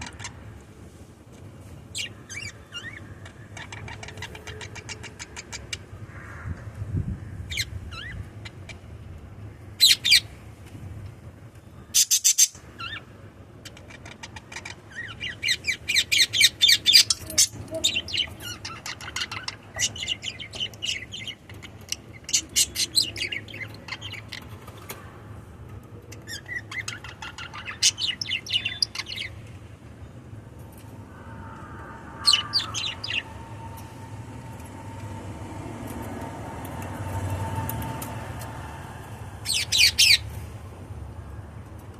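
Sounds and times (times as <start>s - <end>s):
parrots chirping and chattering: 0.0s - 0.6s, 1.9s - 6.0s, 7.5s - 8.9s, 9.8s - 10.3s, 11.9s - 25.0s, 26.0s - 29.7s, 32.2s - 33.4s, 39.4s - 40.3s
low steady hum: 0.0s - 41.9s
steady tone: 30.0s - 39.5s.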